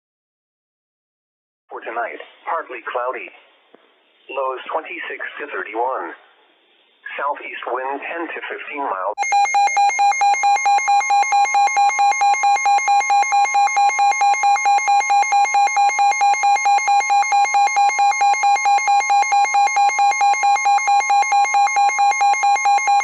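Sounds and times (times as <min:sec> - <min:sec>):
two-tone electronic alarm: 0:09.2 - 0:23.0.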